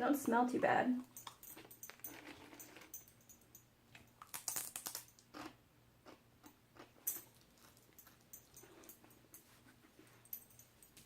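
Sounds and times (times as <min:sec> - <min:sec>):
dog chewing crunchy treat: 0:01.0 - 0:03.2.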